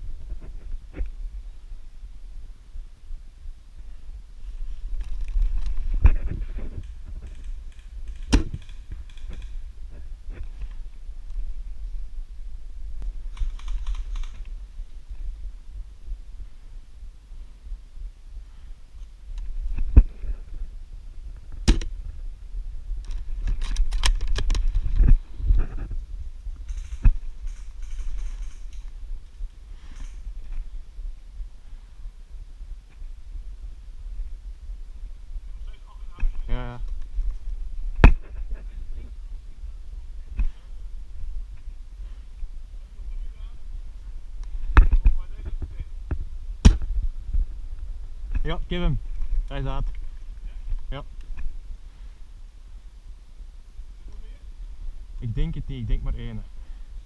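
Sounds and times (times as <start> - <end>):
low rumbling: 0.0 - 56.9
rifle handling clicks and rustle: 4.9 - 9.6, 13.3 - 14.6, 23.0 - 25.2, 26.6 - 29.0
rifle handling clicks and knocks: 23.0 - 25.2.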